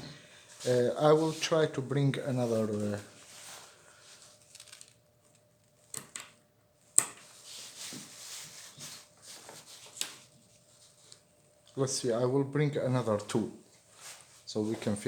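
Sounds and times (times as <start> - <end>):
soft rustling: 0.0 - 5.3, 7.2 - 11.9, 13.1 - 15.0.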